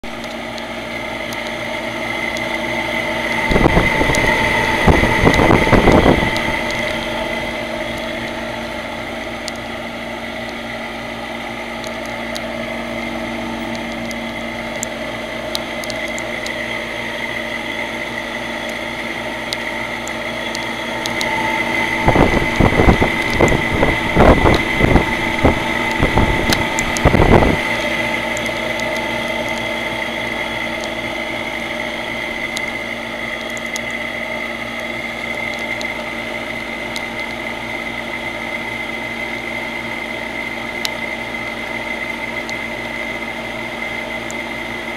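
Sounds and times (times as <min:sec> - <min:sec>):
fan running with high whine: 0:00.0 - 0:44.9
loud rough rushing noise: 0:03.0 - 0:09.1, 0:21.1 - 0:28.9.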